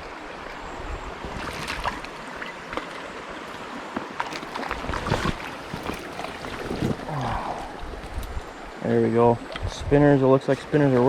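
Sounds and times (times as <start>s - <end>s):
stream water running: 0.0s - 11.0s
small splashes: 1.2s - 8.4s.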